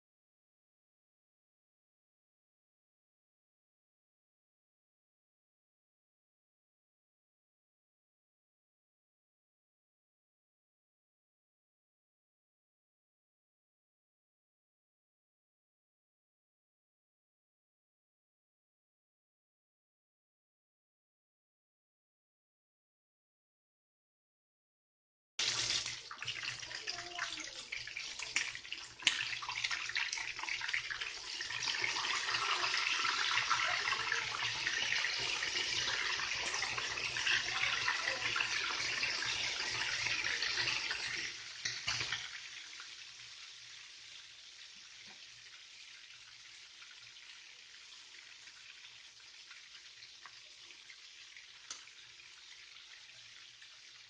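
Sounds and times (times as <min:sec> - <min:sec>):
tap water running into sink: 0:25.4 - 0:43.6, 0:44.2 - 0:54.0
water trickling: 0:25.4 - 0:54.0.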